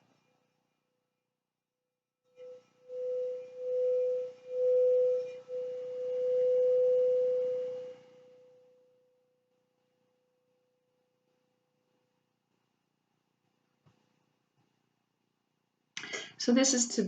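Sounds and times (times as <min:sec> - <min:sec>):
faint hiss: 0:02.4 - 0:08.6
singing bowl ringing: 0:02.4 - 0:09.2.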